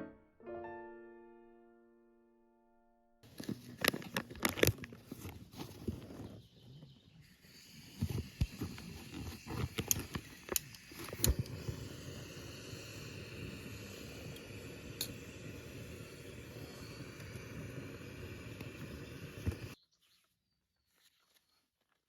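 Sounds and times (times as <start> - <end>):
rustling: 3.2 - 11.4
steady hiss: 3.2 - 19.8.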